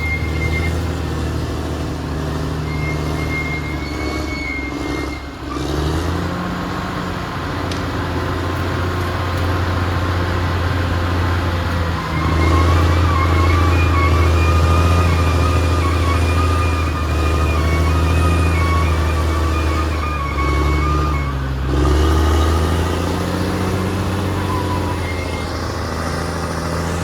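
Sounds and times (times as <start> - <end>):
thin high squeal: 0.0 - 1.0, 2.6 - 5.4, 12.0 - 26.5
bulldozer diesel engine running: 0.0 - 27.0.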